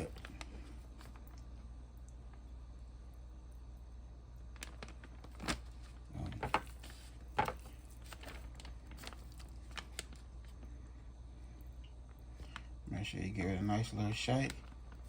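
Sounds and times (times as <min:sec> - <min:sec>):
rustle of flour: 0:04.9 - 0:10.8.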